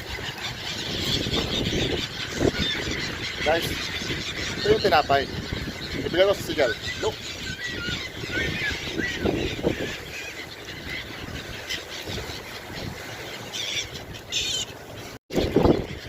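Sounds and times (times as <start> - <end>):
seagulls crying: 0.0 - 16.0.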